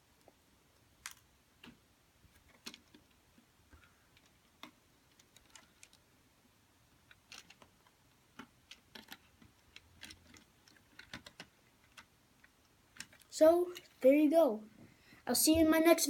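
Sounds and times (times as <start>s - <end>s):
plastic pieces clicking: 1.0s - 6.1s, 7.0s - 13.9s.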